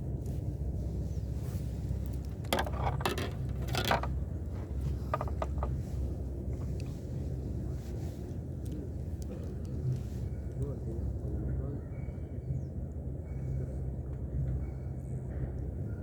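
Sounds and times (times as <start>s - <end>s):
short clinks and rattles: 2.3s - 6.0s.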